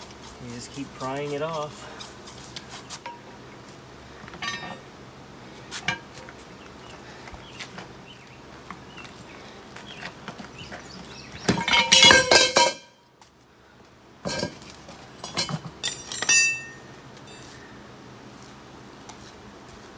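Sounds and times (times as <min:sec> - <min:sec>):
tire spoons clanking on metal rim: 0:03.0 - 0:03.4, 0:04.3 - 0:04.9, 0:05.8 - 0:06.4, 0:09.9 - 0:13.0, 0:14.2 - 0:17.6.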